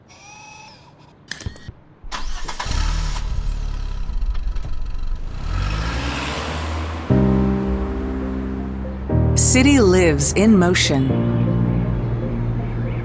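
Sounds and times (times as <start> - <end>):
sharp clicks: 1.3 - 2.6
car engine starting and revving: 2.0 - 9.7.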